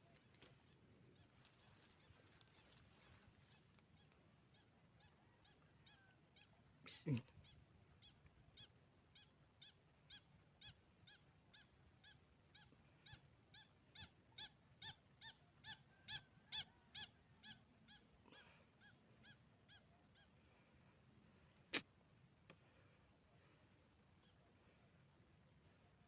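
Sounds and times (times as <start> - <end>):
bird calling: 0.0 - 20.7.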